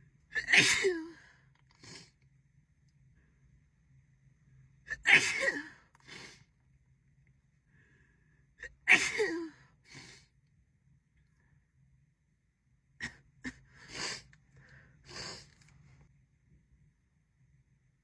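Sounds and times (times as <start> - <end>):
woman sneezing: 0.3 - 1.2, 4.9 - 5.7, 8.9 - 9.6.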